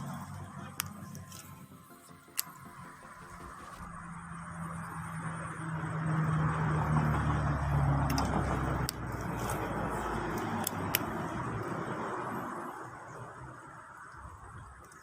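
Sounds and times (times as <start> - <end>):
vehicle engine passing: 0.0 - 14.8
sharp clicks: 0.8 - 4.0.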